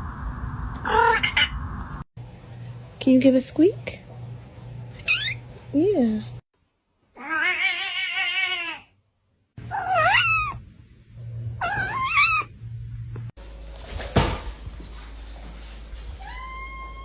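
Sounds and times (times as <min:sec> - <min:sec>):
low hum: 0:00.0 - 0:06.4
cat meowing: 0:07.2 - 0:08.9, 0:09.7 - 0:10.6, 0:11.6 - 0:12.5.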